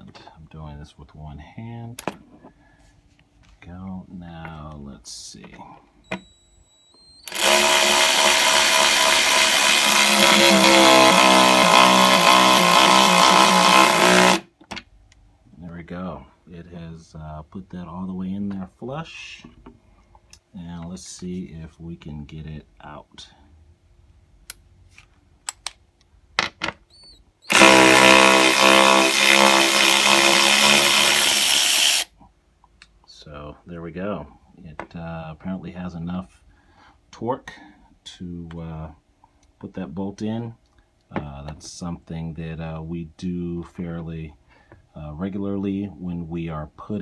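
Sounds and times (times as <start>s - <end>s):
electric ratchet wrench whine: 6.1s - 14.4s, 27.5s - 32.1s
sharp clicks: 25.5s - 25.8s.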